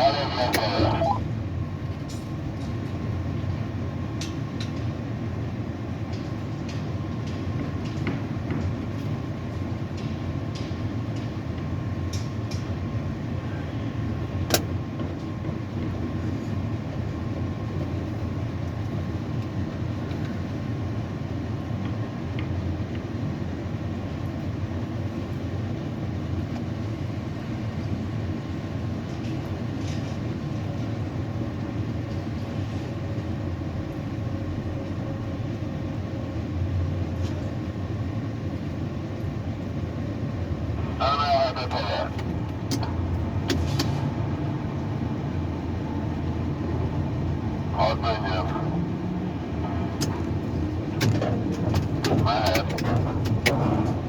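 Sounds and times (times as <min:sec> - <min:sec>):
faint whine: 0:00.0 - 0:01.4, 0:40.8 - 0:43.0, 0:47.5 - 0:48.9
crane mechanical rumble: 0:00.0 - 0:04.1, 0:37.8 - 0:54.0.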